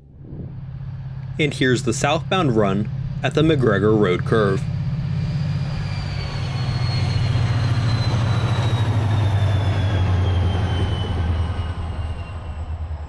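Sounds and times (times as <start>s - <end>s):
train engine drone and rumble: 0.0s - 13.0s
high wheel squeal: 4.5s - 13.0s.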